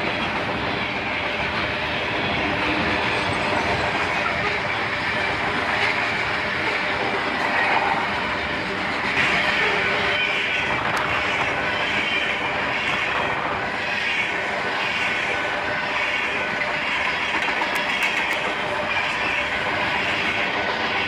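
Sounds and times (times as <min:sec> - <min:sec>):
freight train rolling past: 0:00.0 - 0:21.0
wheels clattering on rail: 0:16.5 - 0:21.0.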